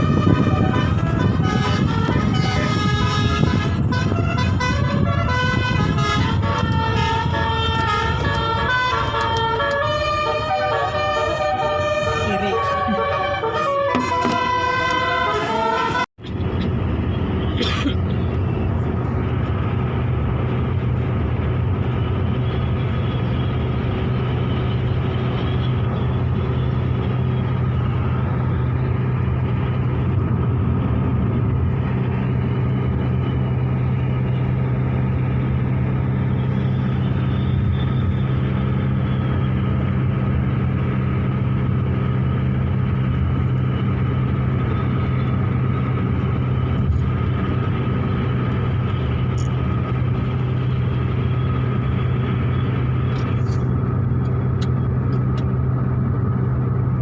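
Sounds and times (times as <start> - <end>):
road noise: 0.0 - 57.0
vehicle engine running: 16.2 - 57.0.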